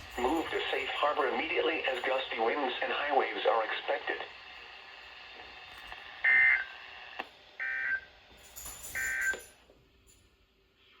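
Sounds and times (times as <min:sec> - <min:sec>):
radio hiss: 0:00.0 - 0:07.3.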